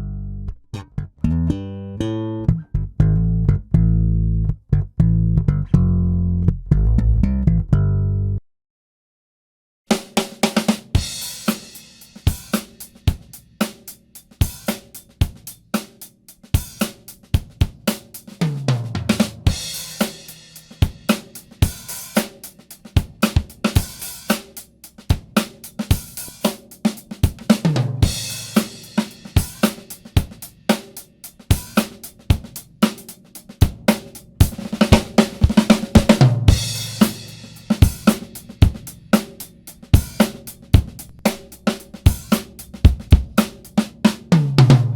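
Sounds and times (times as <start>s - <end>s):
drum kit groove: 9.9s - 44.9s.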